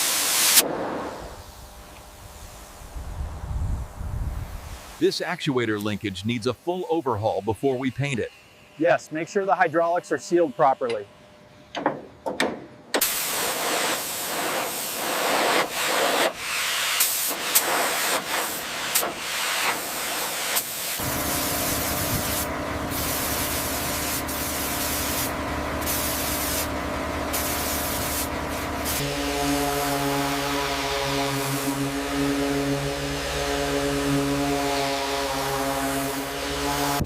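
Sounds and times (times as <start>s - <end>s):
high-pressure spray hissing on metal: 0.0s - 0.6s, 13.0s - 33.0s, 33.8s - 37.0s.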